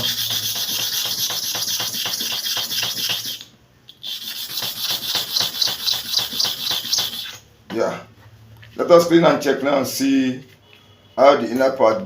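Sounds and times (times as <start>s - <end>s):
blade grinding on sharpening surface: 0.0s - 3.4s, 4.0s - 7.4s.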